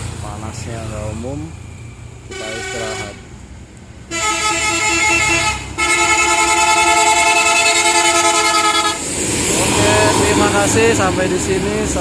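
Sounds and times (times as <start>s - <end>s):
multi-tone musical bus horn: 2.3s - 3.2s, 4.1s - 9.0s.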